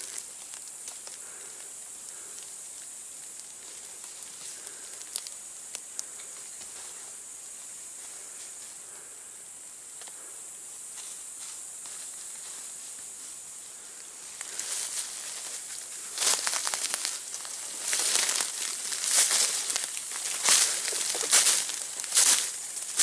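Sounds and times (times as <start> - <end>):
footsteps rustling undergrowth: 0.0 - 8.9, 10.8 - 23.0
high-pitched hiss: 0.0 - 23.0
twigs snapping: 3.2 - 6.8, 15.9 - 23.0.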